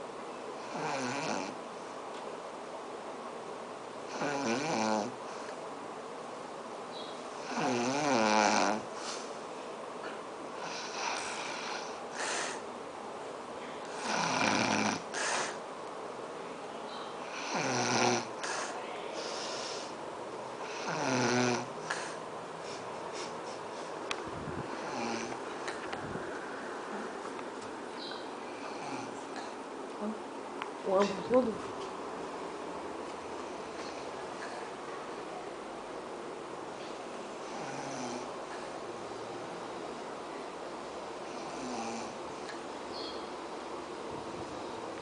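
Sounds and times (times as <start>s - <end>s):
woman snoring: 0.6s - 1.6s, 4.1s - 5.2s, 7.4s - 8.9s, 10.6s - 12.6s, 13.9s - 15.6s, 17.2s - 19.9s, 20.6s - 22.2s, 24.7s - 25.4s, 28.5s - 29.5s, 37.4s - 38.3s, 41.2s - 42.2s.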